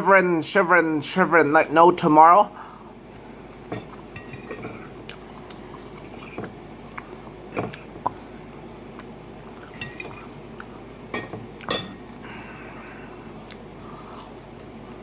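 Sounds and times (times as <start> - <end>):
cutlery clinking on a dish: 3.7 - 4.8, 9.7 - 10.2, 11.2 - 12.0.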